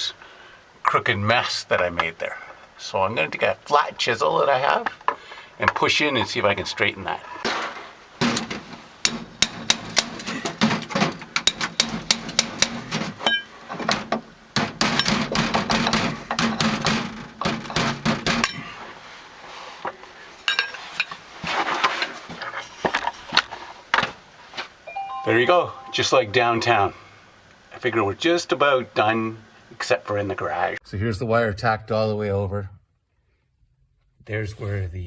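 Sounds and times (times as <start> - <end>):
chisel clicking and knocking on siding: 8.3 - 12.9.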